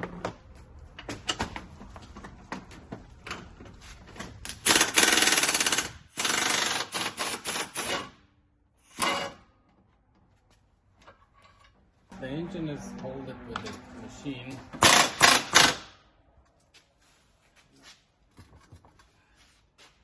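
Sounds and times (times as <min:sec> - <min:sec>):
impact wrench hammering: 0:04.5 - 0:08.1, 0:14.8 - 0:16.0.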